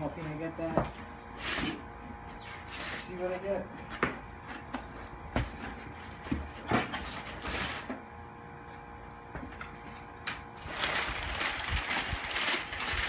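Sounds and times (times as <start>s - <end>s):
cardboard rustling: 10.6s - 13.0s.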